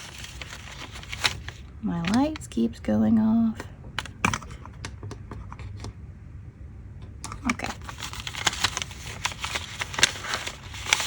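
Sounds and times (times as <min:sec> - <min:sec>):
paper rustling and clicking: 0:00.0 - 0:02.4, 0:07.2 - 0:11.0.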